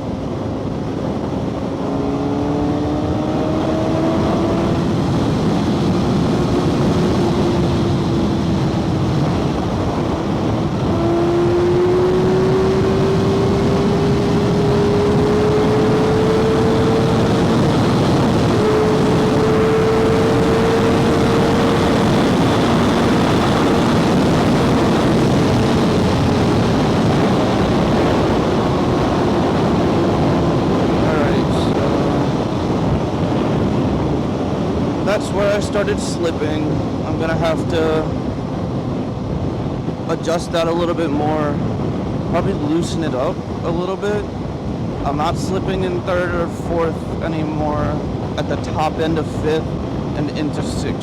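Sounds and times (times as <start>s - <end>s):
motorcycle engine accelerating: 0.0s - 40.4s
wind noise: 0.0s - 51.0s.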